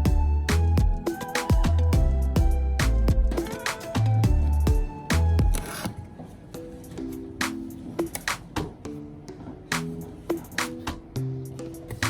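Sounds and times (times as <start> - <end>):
background music with drum beat: 0.0 - 6.0, 6.6 - 12.0.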